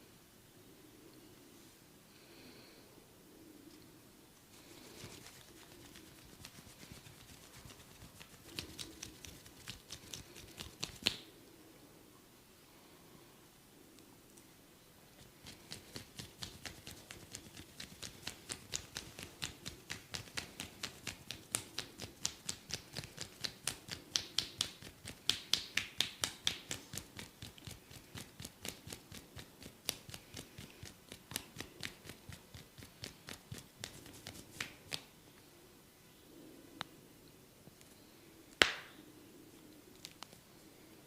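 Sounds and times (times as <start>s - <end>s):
hands tapping on head: 5.0s - 11.3s, 15.7s - 35.1s, 38.6s - 38.9s.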